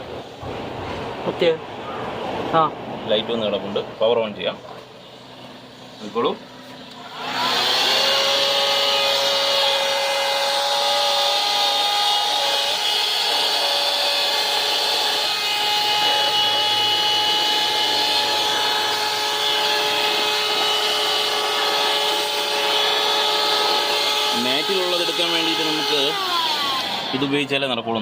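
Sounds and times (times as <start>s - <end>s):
handheld vacuum cleaner running: 7.1s - 27.7s.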